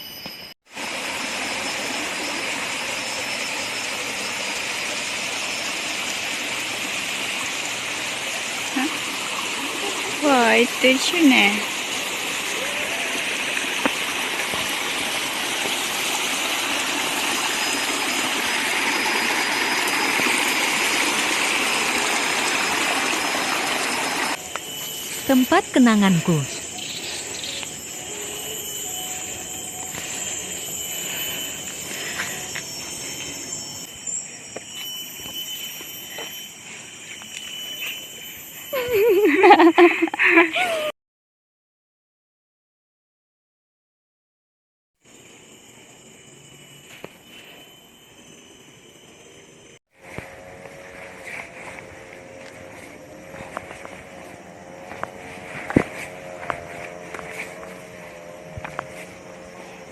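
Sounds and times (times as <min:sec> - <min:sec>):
faint thin high tone: 0:00.0 - 0:00.6, 0:24.4 - 0:39.2
insects droning: 0:00.0 - 0:40.9, 0:45.0 - 0:59.9
forest stream running: 0:00.7 - 0:40.9, 0:50.0 - 0:59.9.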